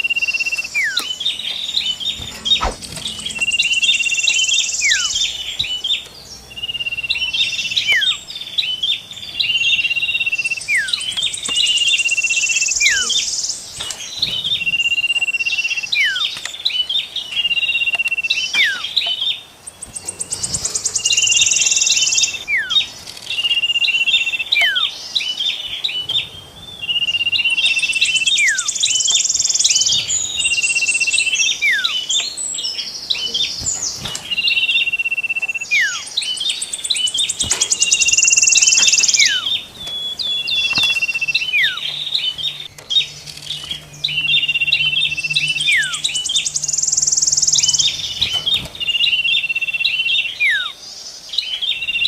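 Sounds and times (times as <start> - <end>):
sharp bird chips: 0.0 - 25.0, 26.9 - 50.8
rapid high trill: 2.0 - 5.4
falling whistle: 44.0 - 48.0.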